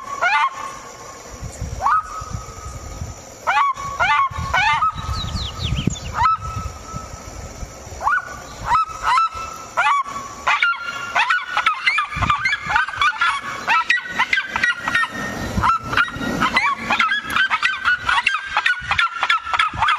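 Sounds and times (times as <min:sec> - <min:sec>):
bird honking calls: 0:00.0 - 0:00.9, 0:03.4 - 0:07.0, 0:08.0 - 0:19.9.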